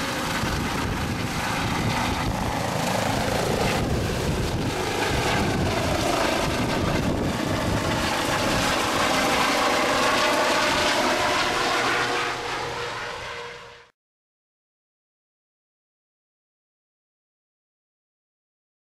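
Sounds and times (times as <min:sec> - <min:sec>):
helicopter rotor noise: 0:00.0 - 0:13.9
helicopter turbine whine: 0:00.0 - 0:13.9.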